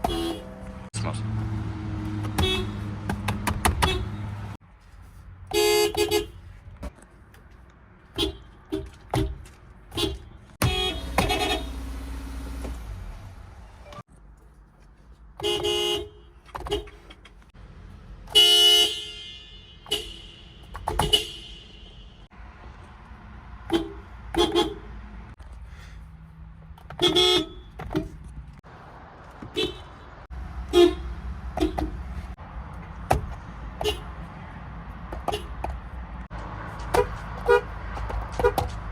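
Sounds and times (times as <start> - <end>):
car horn honking: 0.0 - 0.8, 2.2 - 4.6, 5.5 - 6.4, 9.9 - 12.6, 15.4 - 17.0, 18.3 - 22.3, 23.6 - 25.0, 26.9 - 28.0, 29.5 - 32.3, 33.8 - 34.1, 35.2 - 35.7, 36.9 - 37.7.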